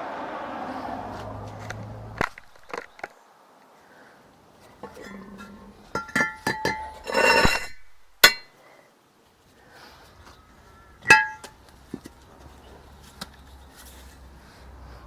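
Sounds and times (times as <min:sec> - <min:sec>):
metal scraping on metal: 0:04.7 - 0:08.5
metal clinks and knocks: 0:04.8 - 0:08.5, 0:10.8 - 0:11.6.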